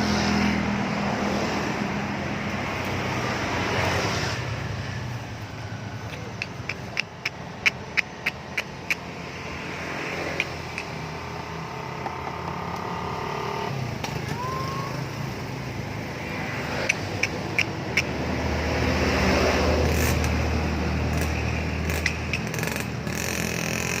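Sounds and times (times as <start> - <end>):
car running: 0.0 - 24.0
sharp clicks: 6.1 - 9.1, 10.3 - 11.1, 16.8 - 18.2, 21.1 - 24.0.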